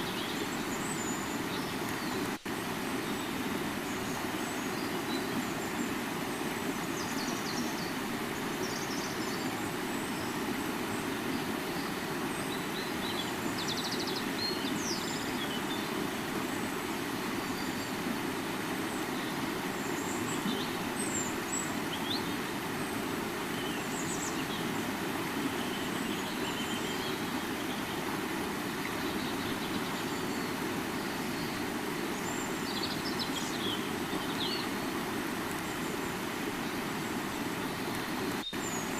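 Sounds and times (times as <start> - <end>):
river water flowing: 0.0 - 38.9
small birds chirping: 18.8 - 38.9.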